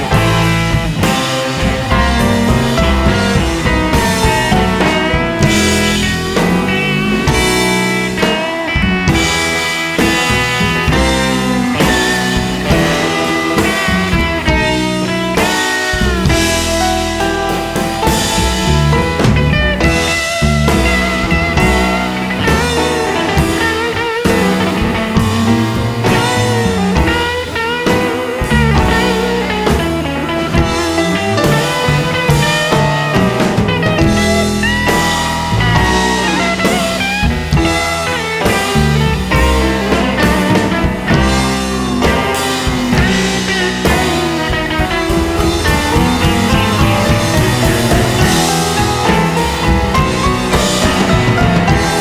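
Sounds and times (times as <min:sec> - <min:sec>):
rock music with guitar and drums: 0:00.0 - 0:52.0.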